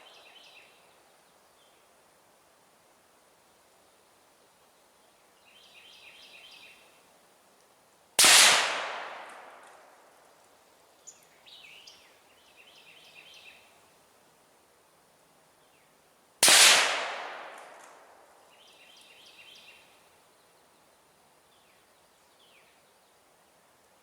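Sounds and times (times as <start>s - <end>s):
bird singing: 0.0s - 1.8s, 5.4s - 6.9s, 11.0s - 13.7s, 18.5s - 20.8s
rifle shot echoing: 8.2s - 9.8s, 16.4s - 18.0s.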